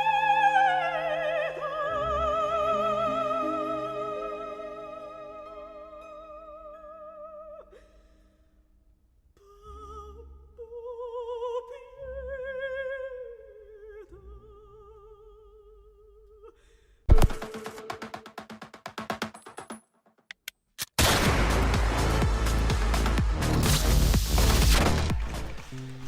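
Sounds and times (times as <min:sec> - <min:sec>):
operatic voice singing: 0:00.0 - 0:05.8.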